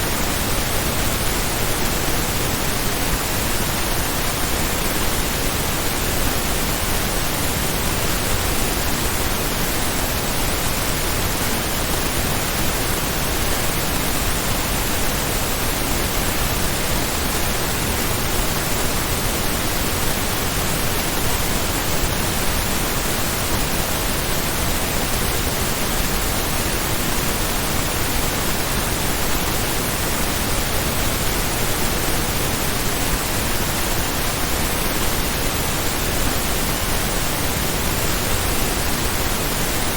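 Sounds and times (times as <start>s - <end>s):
pink noise hiss: 0.0s - 39.9s.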